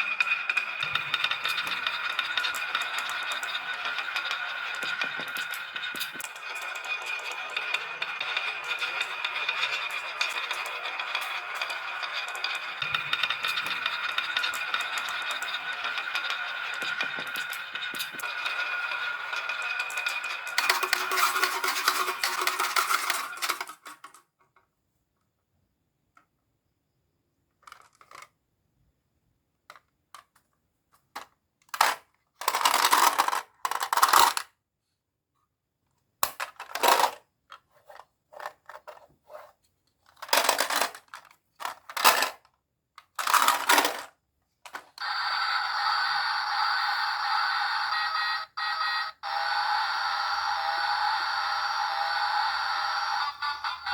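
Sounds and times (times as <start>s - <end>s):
marbles rattling down wooden track: 0.0s - 24.1s, 31.8s - 34.4s, 40.2s - 42.3s, 43.2s - 44.1s, 46.2s - 53.9s.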